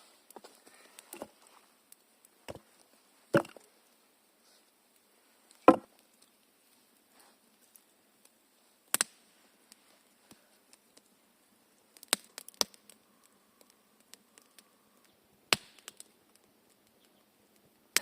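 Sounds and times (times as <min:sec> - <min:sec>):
wood being chopped: 0:03.3 - 0:03.6, 0:05.7 - 0:05.9.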